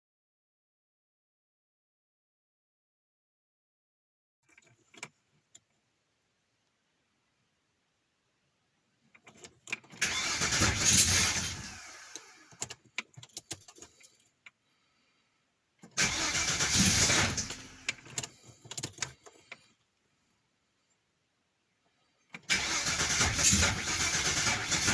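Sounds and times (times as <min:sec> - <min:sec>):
car engine revving with ticks: 0:15.8 - 0:19.2, 0:22.8 - 0:24.9.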